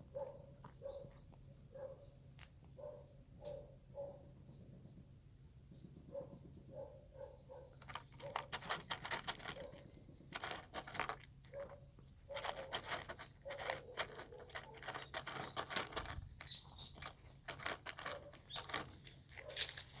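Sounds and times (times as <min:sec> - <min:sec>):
cat chewing food crunchily: 0:07.8 - 0:11.8, 0:12.4 - 0:19.5.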